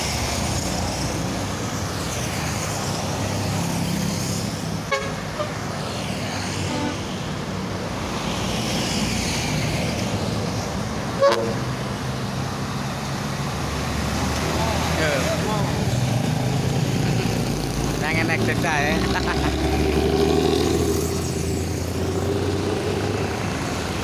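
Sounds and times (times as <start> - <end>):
traffic noise from passing vehicles: 0.0 - 24.0
loud horn blast: 4.9 - 5.7, 6.6 - 7.2, 11.2 - 11.7
short car horn toots: 6.7 - 7.1, 11.2 - 11.6.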